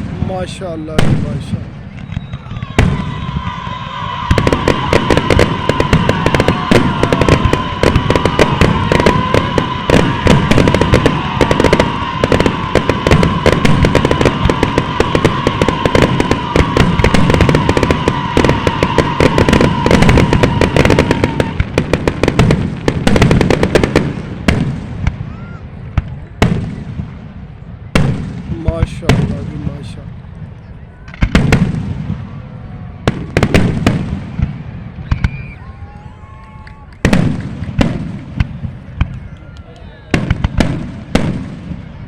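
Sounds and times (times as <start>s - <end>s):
fireworks bangs and crackles: 0.0s - 42.0s
steady whistling tone: 1.9s - 3.3s, 35.0s - 36.9s.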